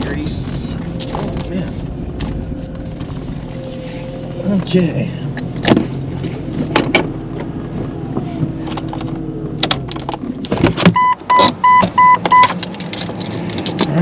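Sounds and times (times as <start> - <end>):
car engine running low: 0.0 - 14.0
electronic warning chime beeping: 11.0 - 12.5.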